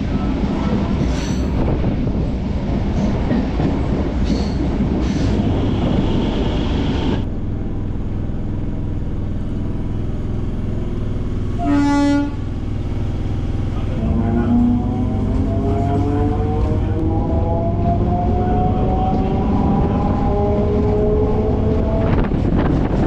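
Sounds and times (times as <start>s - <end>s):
steady train hum: 0.0s - 23.0s
train wheel and track noise: 0.0s - 23.0s.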